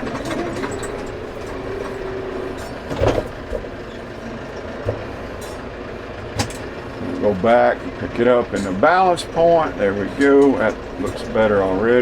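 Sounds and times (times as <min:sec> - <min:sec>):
log clunk: 0:00.0 - 0:05.7
loader whine: 0:00.0 - 0:12.0
tractor engine running: 0:00.0 - 0:12.0.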